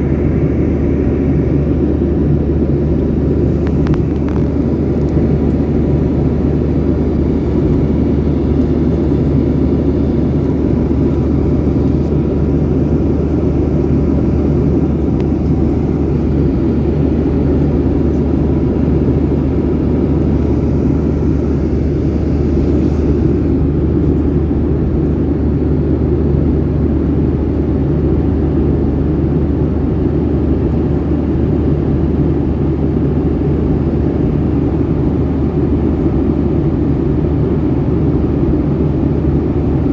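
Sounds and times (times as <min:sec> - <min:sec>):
jet engine drone in cabin: 0:00.0 - 0:39.9.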